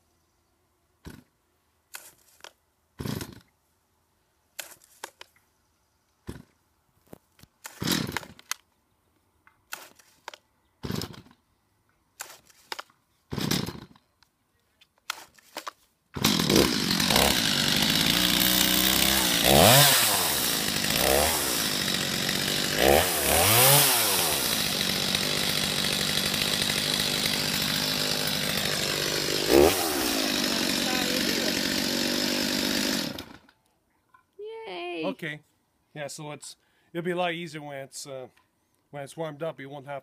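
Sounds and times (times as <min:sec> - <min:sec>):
chainsaw recoil cord cranking: 0:01.9 - 0:03.5, 0:07.6 - 0:08.6, 0:09.7 - 0:11.4, 0:12.2 - 0:14.2, 0:15.0 - 0:33.6
chainsaw engine running and revving: 0:16.2 - 0:33.4.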